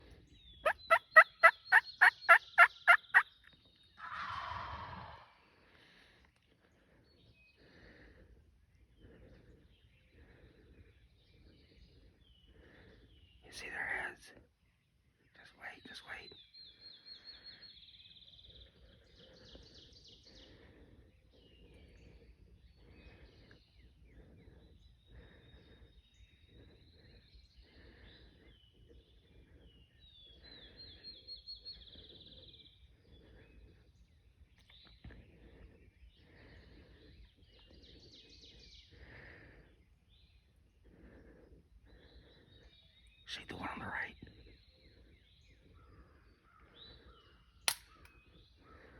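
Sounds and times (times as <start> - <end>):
songbirds chirping: 0.0 - 48.9
bird trill: 0.6 - 3.3
turkey rattling gobble: 0.7 - 3.2
turkey yelping: 0.7 - 3.2.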